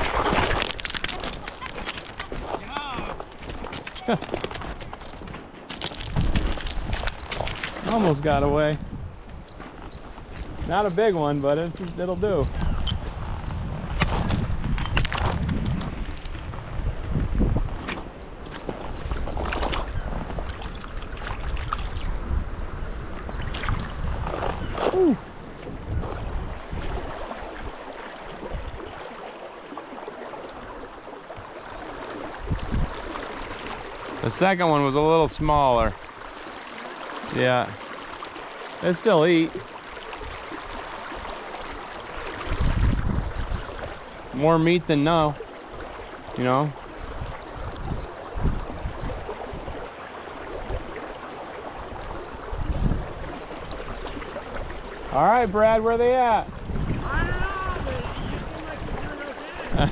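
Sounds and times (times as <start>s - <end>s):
wind rumble on microphone: 0.0s - 29.1s, 30.6s - 34.3s, 39.6s - 59.9s
river water rushing: 26.3s - 59.9s.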